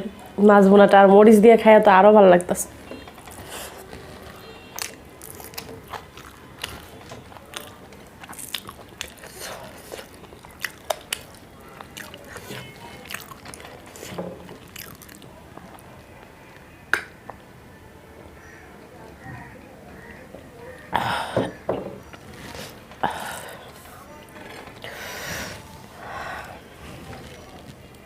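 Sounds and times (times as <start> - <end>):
person chewing food: 3.0 - 16.0.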